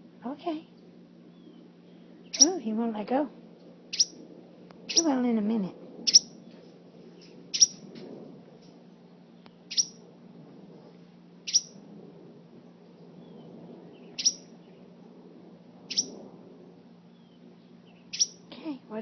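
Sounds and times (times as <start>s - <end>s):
sparrow chirping: 1.3s - 2.8s, 3.9s - 4.2s, 4.9s - 5.2s, 6.1s - 6.4s, 7.2s - 7.8s, 9.6s - 10.0s, 11.5s - 11.8s, 13.2s - 14.8s, 15.9s - 16.1s, 17.1s - 18.4s.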